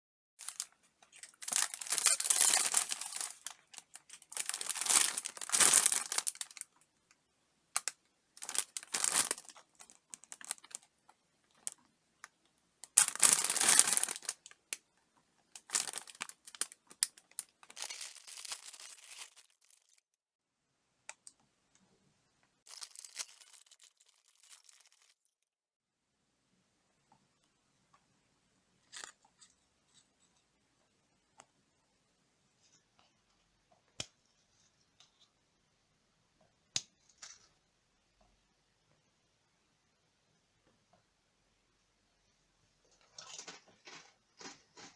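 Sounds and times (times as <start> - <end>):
wrapper crinkling: 0.4 - 6.8, 7.8 - 10.9, 12.8 - 14.8, 15.6 - 19.9, 22.7 - 25.2.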